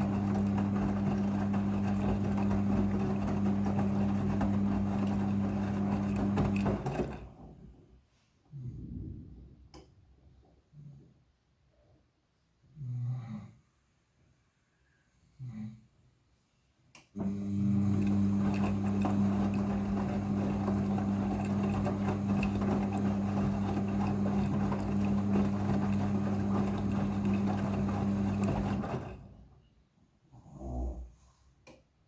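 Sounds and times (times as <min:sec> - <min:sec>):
washing machine electric hum: 0:00.0 - 0:07.6, 0:17.2 - 0:29.6.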